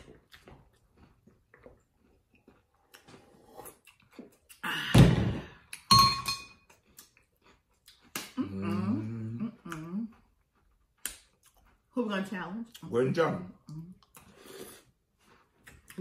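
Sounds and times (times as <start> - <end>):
ringing clink of glass: 5.9 - 6.6.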